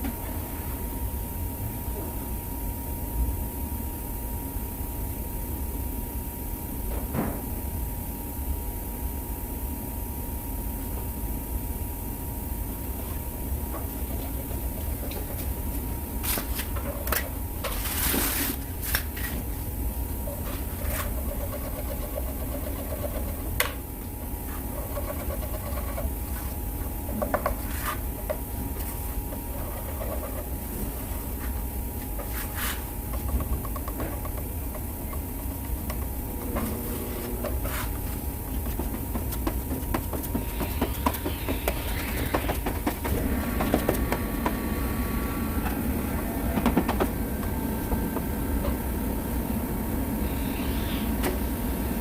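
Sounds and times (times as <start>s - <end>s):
low workshop hum: 0.0s - 52.0s
rubbing and scraping body filler: 13.8s - 19.5s, 20.2s - 23.6s, 24.4s - 44.0s.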